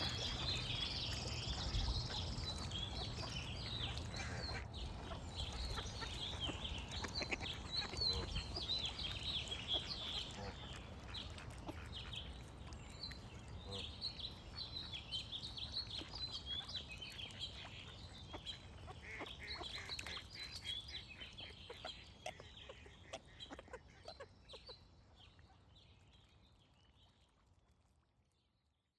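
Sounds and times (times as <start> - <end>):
songbirds chirping: 0.0 - 27.0
ducks quacking: 1.7 - 8.7.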